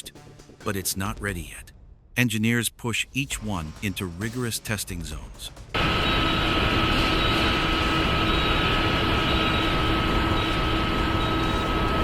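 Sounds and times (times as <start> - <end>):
factory machinery roar: 5.7 - 12.0
high machine whine: 5.7 - 12.0
low machine hum: 5.8 - 12.0.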